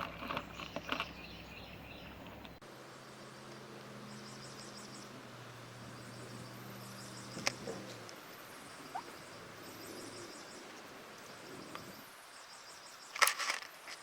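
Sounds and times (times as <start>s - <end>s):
high bird chirps: 8.4s - 10.7s.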